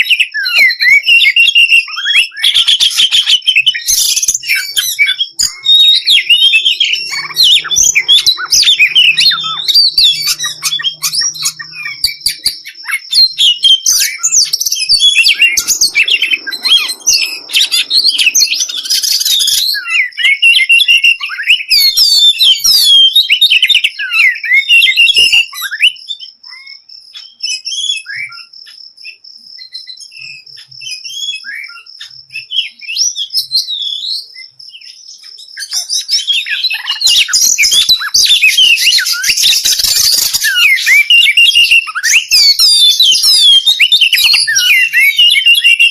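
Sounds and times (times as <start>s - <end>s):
songbirds chirping and twittering: 0.0s - 45.9s
steady high-pitched tone: 6.4s - 12.6s, 13.2s - 19.8s.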